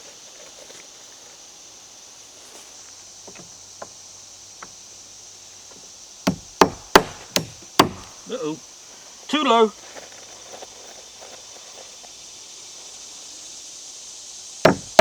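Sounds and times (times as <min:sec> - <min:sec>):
faint steady high hiss: 0:00.0 - 0:15.0
hammer driving a nail into wood: 0:06.3 - 0:08.2, 0:14.7 - 0:15.0.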